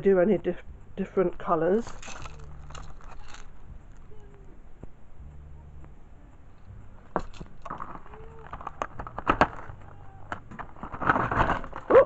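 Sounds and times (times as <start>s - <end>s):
objects clicking and rustling: 1.8s - 4.1s, 7.0s - 12.0s.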